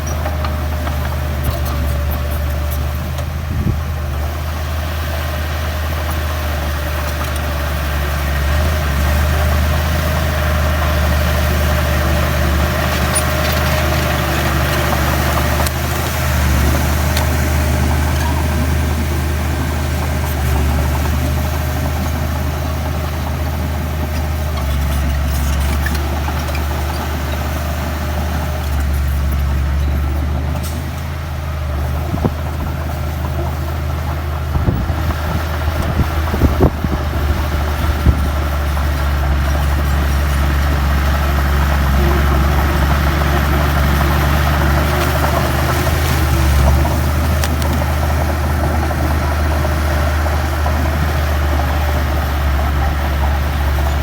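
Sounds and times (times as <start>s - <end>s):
bulldozer diesel engine running: 0.0s - 54.0s.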